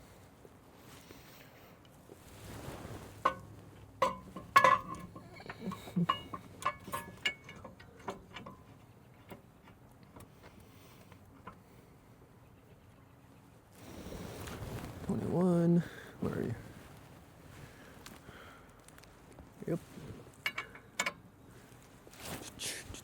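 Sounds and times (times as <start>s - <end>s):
metal tools clinking: 4.0s - 8.6s.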